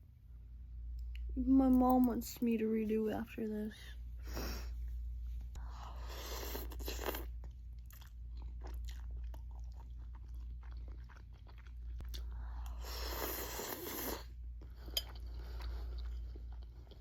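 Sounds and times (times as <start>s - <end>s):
person chewing noodles: 5.6s - 17.0s.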